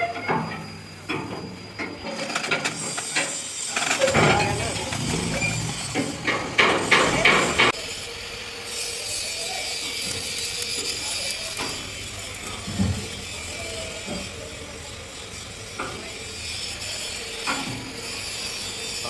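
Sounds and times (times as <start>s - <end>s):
metalworking rattle and hiss: 0.0s - 19.0s.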